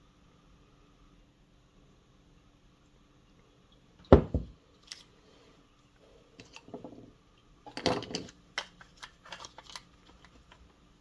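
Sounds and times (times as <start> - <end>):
heavy knock on workbench: 4.1 - 4.6.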